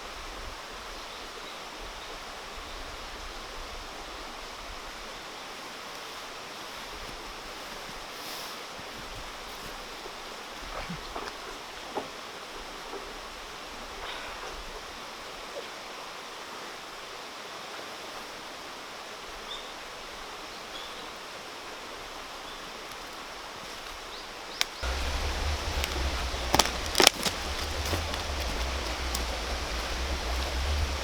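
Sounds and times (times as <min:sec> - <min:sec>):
low rumble: 0:24.8 - 0:31.0
stream water rushing: 0:24.8 - 0:31.0.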